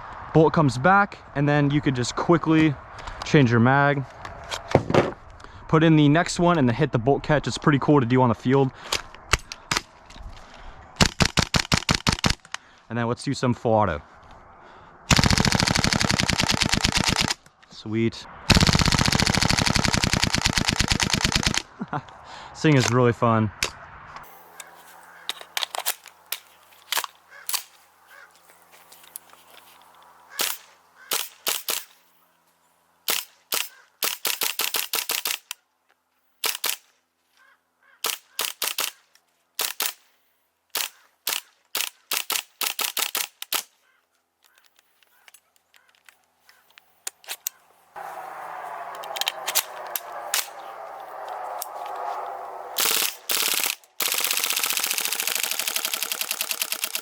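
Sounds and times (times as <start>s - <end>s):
airsoft guns firing: 11.0s - 12.5s, 15.1s - 17.4s, 18.5s - 21.6s, 30.3s - 32.0s, 52.8s - 57.0s.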